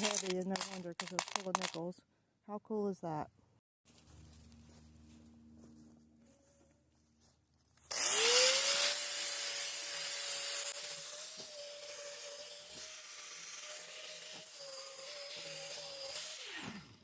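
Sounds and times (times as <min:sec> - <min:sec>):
electric power tool motor whine: 0:07.8 - 0:17.0.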